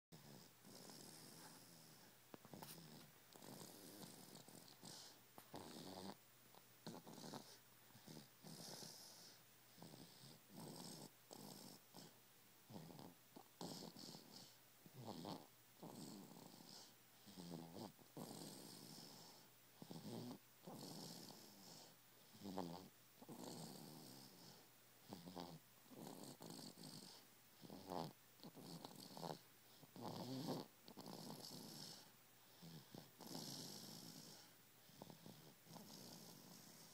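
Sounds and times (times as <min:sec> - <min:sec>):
baby snoring softly: 0:00.1 - 0:36.9.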